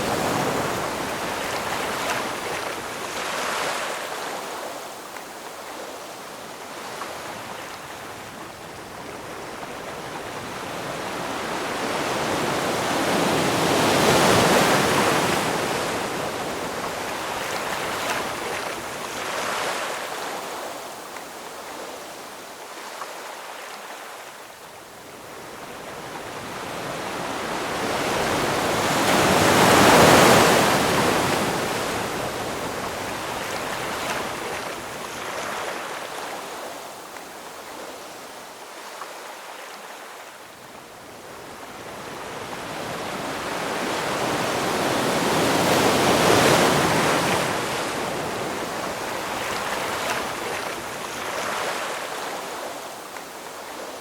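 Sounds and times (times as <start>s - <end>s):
waves breaking: 0.0s - 6.0s, 26.2s - 38.0s, 41.4s - 54.0s.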